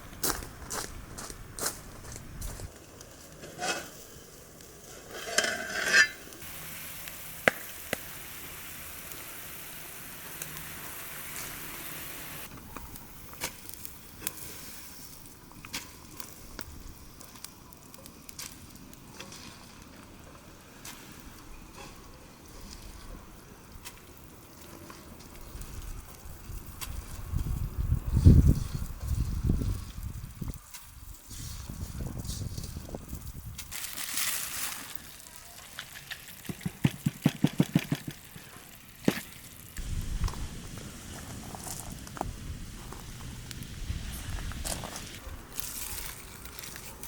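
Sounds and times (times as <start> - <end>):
food sizzling in hot oil: 5.1 - 17.2.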